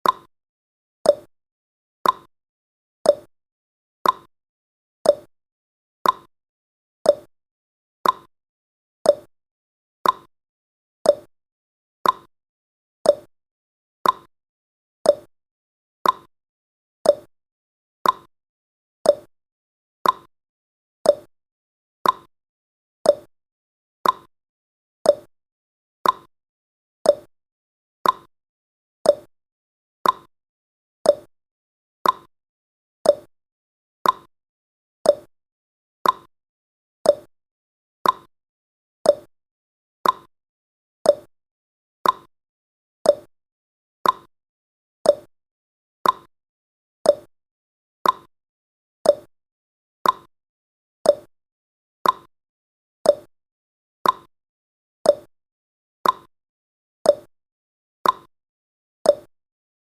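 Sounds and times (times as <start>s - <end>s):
timer clicks: 0.0s - 0.3s, 1.1s - 1.3s, 2.0s - 2.3s, 3.1s - 3.3s, 4.0s - 4.3s, 5.1s - 5.3s, 6.0s - 6.3s, 7.1s - 7.3s, 8.0s - 8.3s, 9.1s - 9.3s, 10.0s - 10.3s, 11.1s - 11.3s, 12.0s - 12.3s, 13.0s - 13.3s, 14.0s - 14.3s, 15.0s - 15.3s, 16.0s - 16.3s, 17.0s - 17.3s, 18.0s - 18.3s, 19.0s - 19.3s, 20.0s - 20.3s, 21.0s - 21.3s, 22.0s - 22.3s, 23.0s - 23.3s, 24.0s - 24.3s, 25.0s - 25.3s, 26.0s - 26.3s, 27.0s - 27.3s, 28.0s - 28.3s, 29.0s - 29.3s, 30.0s - 30.3s, 31.0s - 31.3s, 32.0s - 32.3s, 33.0s - 33.3s, 34.0s - 34.3s, 35.0s - 35.3s, 36.0s - 36.3s, 37.0s - 37.3s, 38.0s - 38.3s, 39.0s - 39.3s, 40.0s - 40.3s, 41.0s - 41.3s, 42.0s - 42.3s, 43.0s - 43.3s, 44.0s - 44.3s, 45.0s - 45.3s, 46.0s - 46.3s, 47.0s - 47.3s, 48.0s - 48.3s, 49.0s - 49.3s, 50.0s - 50.3s, 51.0s - 51.3s, 52.0s - 52.3s, 53.1s - 53.3s, 54.0s - 54.3s, 55.1s - 55.3s, 56.0s - 56.3s, 57.1s - 57.3s, 58.0s - 58.3s, 59.1s - 59.3s.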